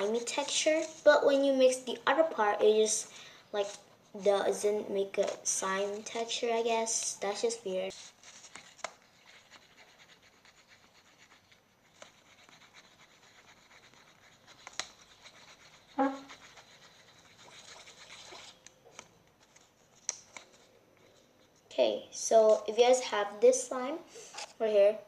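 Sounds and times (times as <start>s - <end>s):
slime being stirred: 0.0s - 1.5s, 3.5s - 21.6s.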